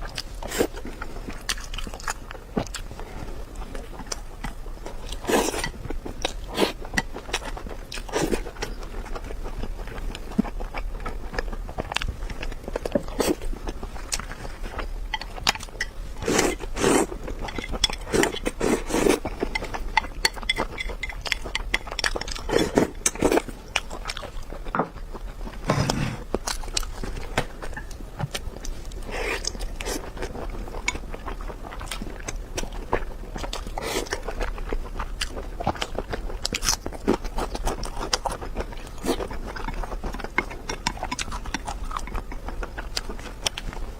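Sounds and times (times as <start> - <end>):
chewing and biting: 26.3 - 43.9.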